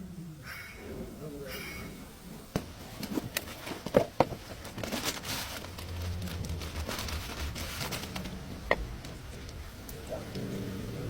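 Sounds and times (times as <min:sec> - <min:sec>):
rustling and crackling: 0:00.8 - 0:11.0
low hum: 0:05.3 - 0:11.0.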